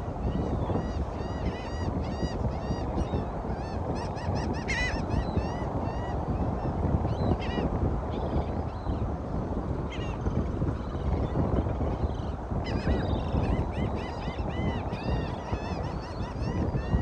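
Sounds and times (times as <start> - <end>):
wind and water rushing: 0.0 - 17.0
birds calling: 0.3 - 9.1, 9.9 - 17.0.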